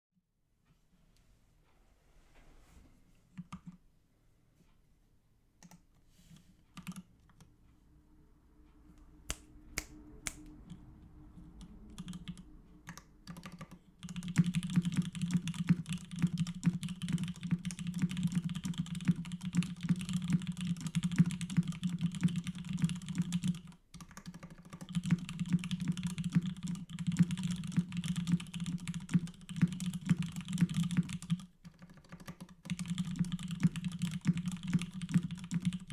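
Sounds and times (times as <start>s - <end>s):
mechanical keyboard typing: 6.7s - 7.5s, 11.5s - 35.9s.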